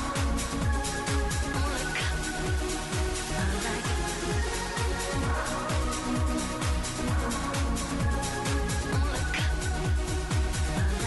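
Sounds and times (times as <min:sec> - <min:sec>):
electronic dance ringtone music: 0:00.0 - 0:11.0.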